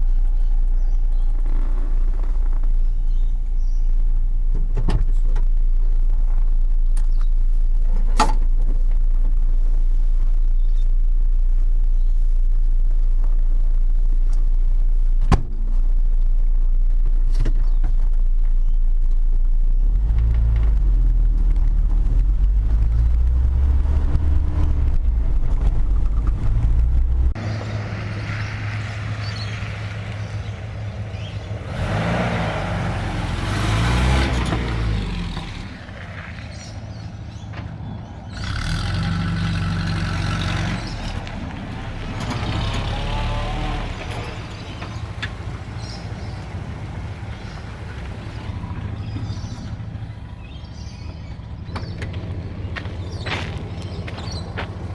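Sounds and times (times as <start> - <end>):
road and wind noise: 0.0 - 54.9
truck engine accelerating: 17.7 - 54.9.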